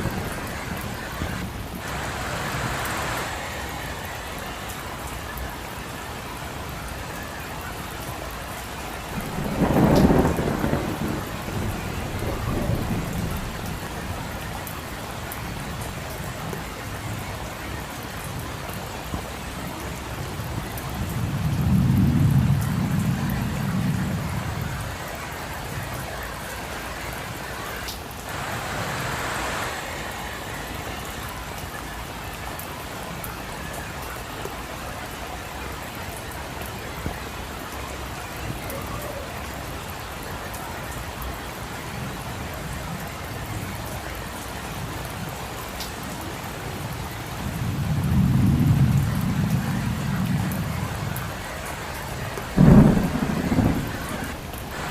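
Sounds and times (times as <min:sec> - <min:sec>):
low rolls of thunder: 0:00.0 - 0:04.0, 0:08.8 - 0:16.6, 0:19.7 - 0:26.2, 0:47.3 - 0:54.9
rain falling on a street: 0:00.0 - 0:54.9.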